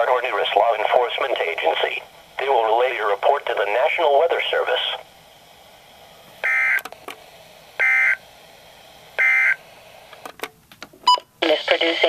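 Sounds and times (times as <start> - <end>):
faint radio hiss: 0.0 - 12.0
digital data tone bursts: 7.8 - 8.2.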